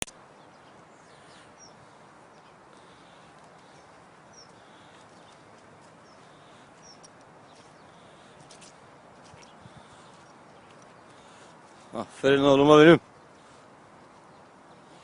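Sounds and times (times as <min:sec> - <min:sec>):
high bird chirps: 0:06.0 - 0:08.0.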